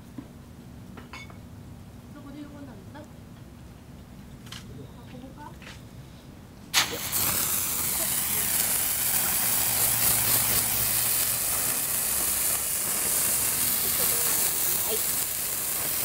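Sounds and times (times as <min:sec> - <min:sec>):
firework spraying sparks hissing: 0:06.7 - 0:16.0.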